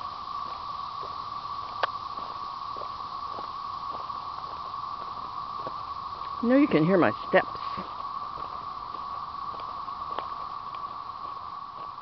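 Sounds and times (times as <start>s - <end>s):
cicadas droning: 0.0s - 12.0s
faint footsteps: 0.0s - 12.0s.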